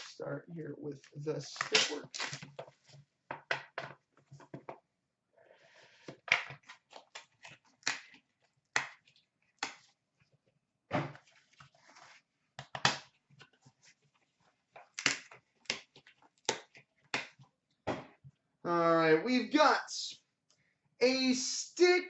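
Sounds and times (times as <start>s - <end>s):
crinkly wrapper rustling: 1.4s - 3.0s.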